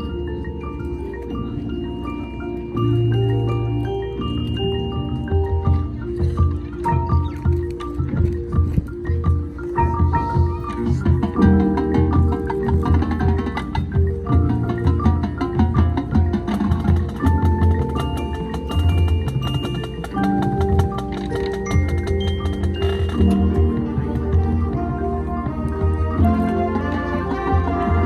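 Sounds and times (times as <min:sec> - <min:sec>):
marching band music: 0:00.0 - 0:28.0
wood block clicks: 0:06.3 - 0:09.8, 0:16.8 - 0:23.6.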